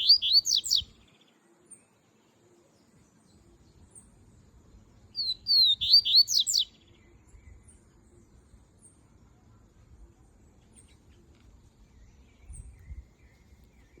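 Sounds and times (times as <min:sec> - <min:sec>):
bird singing whistled phrase: 0:00.0 - 0:01.0, 0:05.2 - 0:06.8
faint high chirps: 0:00.0 - 0:14.0.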